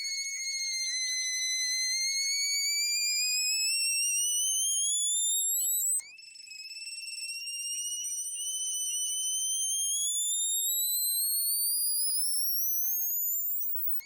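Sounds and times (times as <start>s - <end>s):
warbling bird whistle rising: 6.8s - 14.0s.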